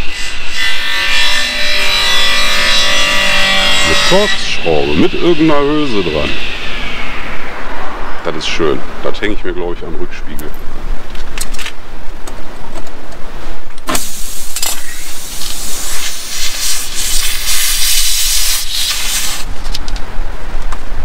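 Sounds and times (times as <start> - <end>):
low rumble: 5.9 - 11.1
compressed air hissing: 13.9 - 19.6.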